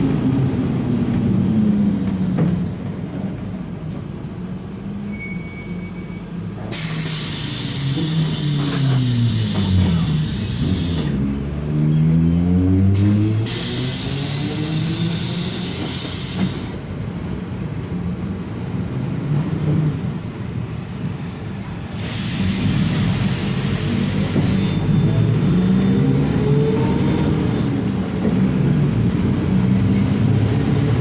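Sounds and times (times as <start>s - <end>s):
bus diesel engine running: 0.0s - 5.0s, 5.6s - 31.0s
loud air hiss: 6.7s - 11.2s, 13.0s - 16.8s, 21.8s - 24.9s.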